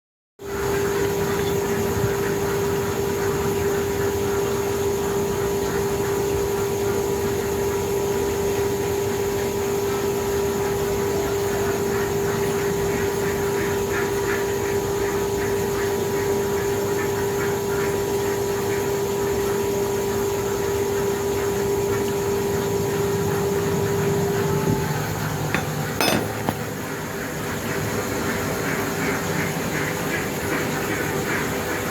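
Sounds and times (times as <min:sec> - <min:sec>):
grinding machine running: 0:21.7 - 0:27.5.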